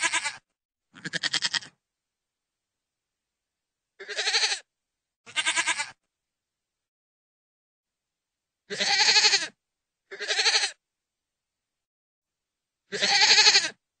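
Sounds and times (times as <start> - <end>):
goat bleating: 0.0 - 0.4, 1.0 - 1.8, 4.0 - 4.7, 5.3 - 6.0, 8.7 - 10.8, 12.9 - 13.8.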